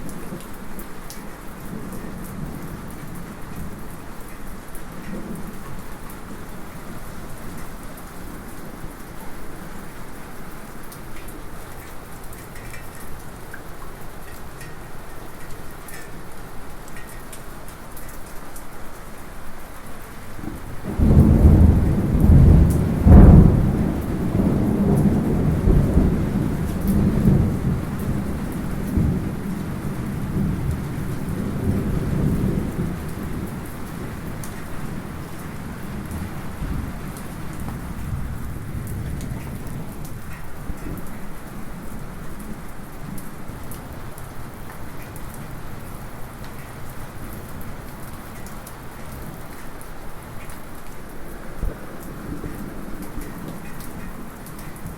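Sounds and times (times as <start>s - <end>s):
light rain falling: 0.0s - 54.9s
thunderclap rumbling: 20.8s - 41.2s, 51.4s - 54.9s.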